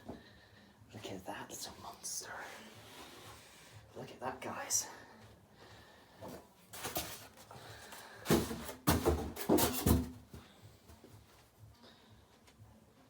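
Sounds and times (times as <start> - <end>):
handling knocks and scuffs: 6.2 - 11.5.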